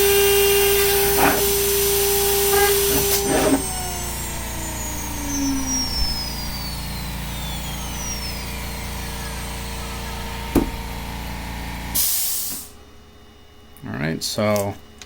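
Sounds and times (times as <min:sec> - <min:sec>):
spindle whine winding down: 0:00.0 - 0:12.0
steady machine hum: 0:00.0 - 0:15.0
short loud hiss: 0:12.0 - 0:12.7.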